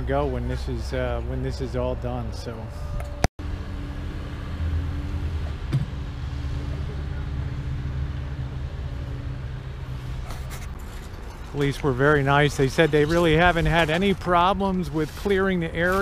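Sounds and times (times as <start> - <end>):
heavy equipment engine running: 3.2 - 15.0.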